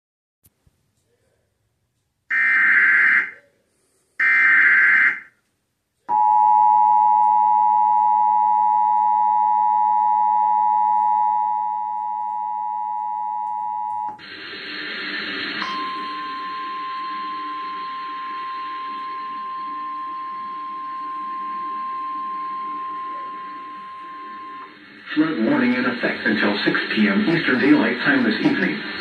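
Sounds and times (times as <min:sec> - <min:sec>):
single steady tone: 0:15.6 - 0:24.8
harsh two-tone alert signal: 0:15.6 - 0:26.2.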